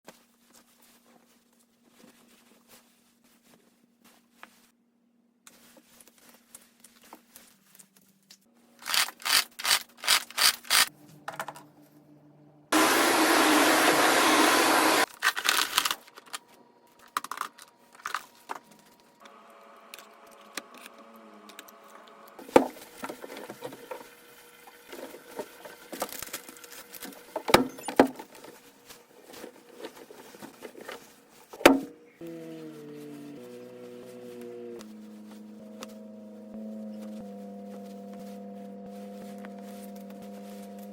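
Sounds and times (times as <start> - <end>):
vacuum cleaner running: 12.7 - 15.1, 19.2 - 27.6, 32.1 - 40.9
handling noises: 25.3 - 36.0
rustling strokes: 28.4 - 40.9.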